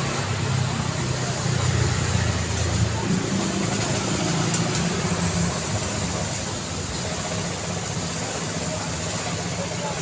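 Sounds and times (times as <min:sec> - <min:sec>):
road noise: 0:00.0 - 0:10.0
vehicle engines humming: 0:00.0 - 0:10.0.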